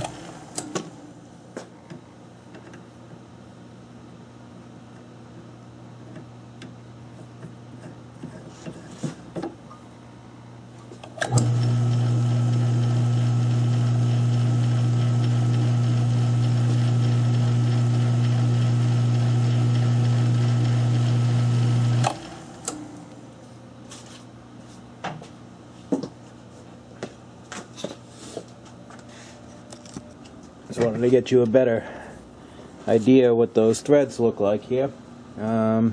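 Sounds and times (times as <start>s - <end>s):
lathe motor humming: 0.0s - 0.6s, 11.2s - 23.2s.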